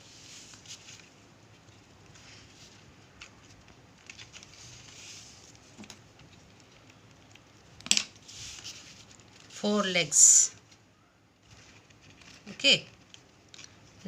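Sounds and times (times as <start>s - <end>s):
paper rustling: 0.0s - 9.9s, 11.4s - 14.0s.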